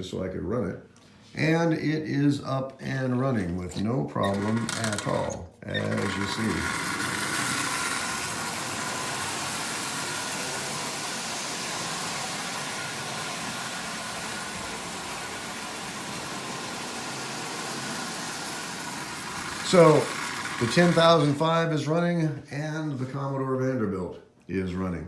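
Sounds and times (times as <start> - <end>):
toy train motor whirring: 4.2 - 21.5
wheels rolling on rails: 4.2 - 21.5.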